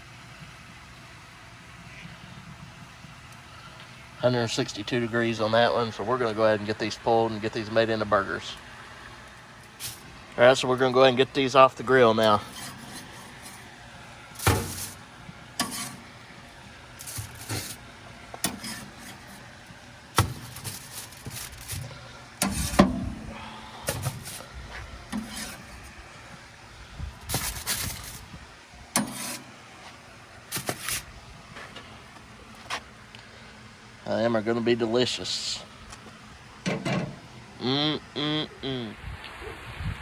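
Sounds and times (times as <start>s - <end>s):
scrapes and clanks on metal grate: 9.6s - 10.2s, 12.2s - 13.7s, 14.4s - 26.0s, 27.2s - 32.8s, 36.6s - 37.3s
rubbing sounds: 9.7s - 10.1s, 12.3s - 13.7s, 14.4s - 15.0s, 15.6s - 16.2s, 17.0s - 17.8s, 18.4s - 19.4s, 20.2s - 22.8s, 23.9s - 24.5s, 25.2s - 25.9s, 27.2s - 28.3s, 29.0s - 31.1s.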